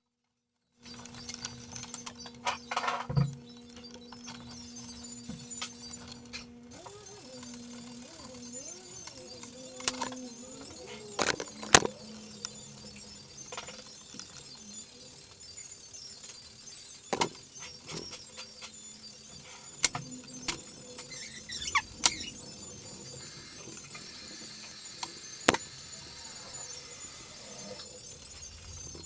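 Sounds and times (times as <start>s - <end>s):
tools clicking and clinking: 8.6s - 12.6s
short falling squeak: 20.9s - 22.5s.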